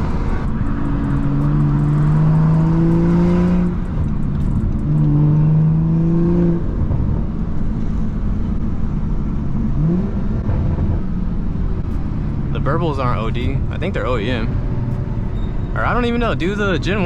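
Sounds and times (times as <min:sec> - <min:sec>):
car engine revving hard: 0:00.0 - 0:03.9
gear change: 0:00.0 - 0:17.0.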